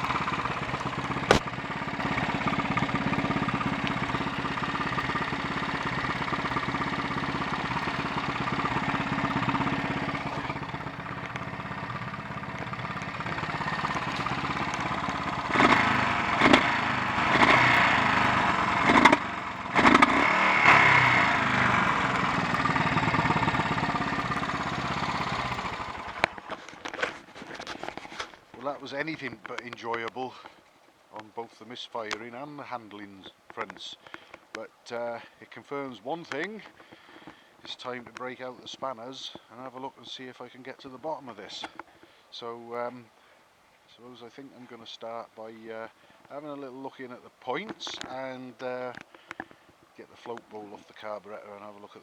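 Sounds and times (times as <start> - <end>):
motorcycle engine running: 0.0 - 29.8
engine misfire cracks: 0.0 - 30.6, 32.0 - 39.9, 47.5 - 52.0.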